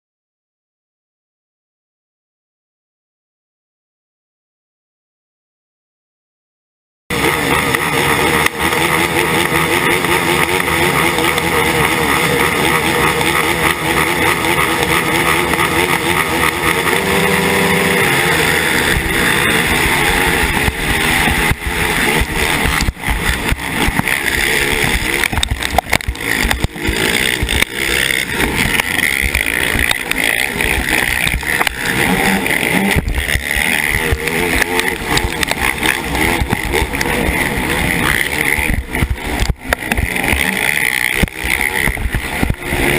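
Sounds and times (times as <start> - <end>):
other quad engines: 7.1 - 42.9
quad engine running hard: 7.1 - 42.9
wind: 7.1 - 42.9.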